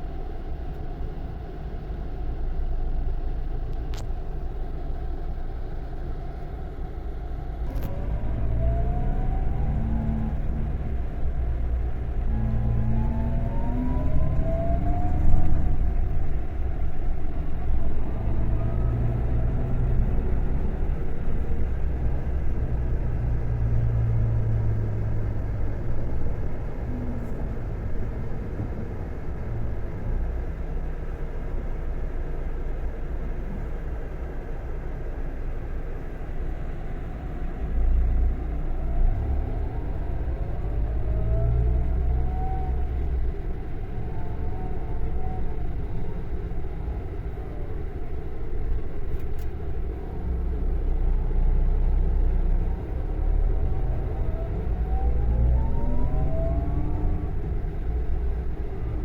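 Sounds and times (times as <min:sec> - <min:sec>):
diesel engine rumbling: 0:00.0 - 0:59.0
engine revving up: 0:07.8 - 0:11.1, 0:12.0 - 0:16.1, 0:52.5 - 0:58.0.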